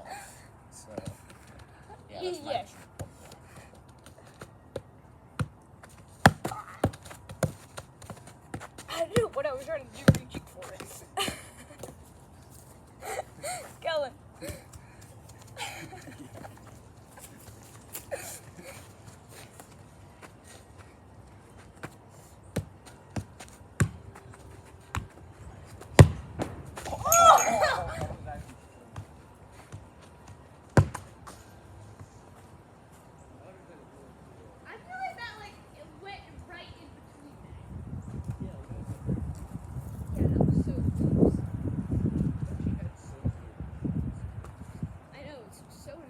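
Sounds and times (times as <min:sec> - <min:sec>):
ball bouncing on hard surface: 0:06.2 - 0:09.4, 0:22.6 - 0:24.1, 0:26.0 - 0:28.2, 0:30.7 - 0:31.4.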